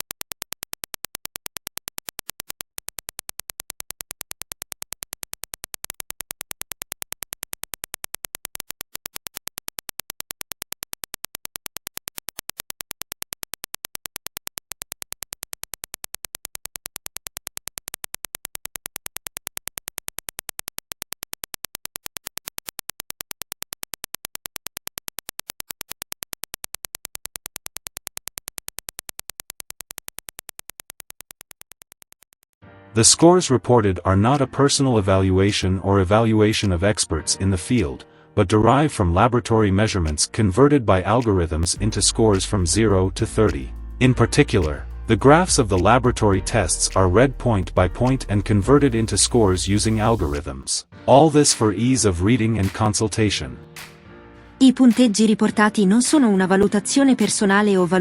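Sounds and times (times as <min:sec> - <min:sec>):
music playing: 0:41.6 - 0:57.9.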